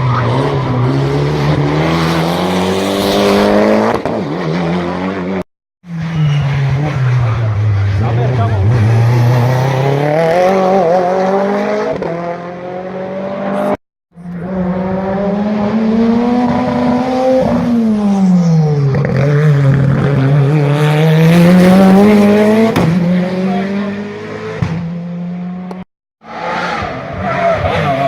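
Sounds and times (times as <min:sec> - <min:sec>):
race car engine revving: 0:06.3 - 0:18.2.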